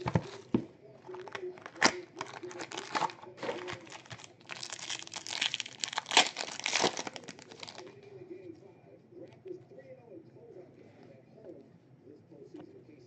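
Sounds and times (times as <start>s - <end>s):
plastic wrappers crinkling and tearing: 0.0s - 7.9s.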